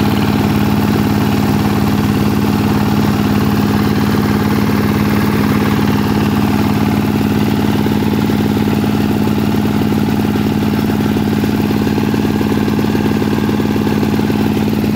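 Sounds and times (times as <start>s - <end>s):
corn sheller machine running: 0.0s - 14.9s.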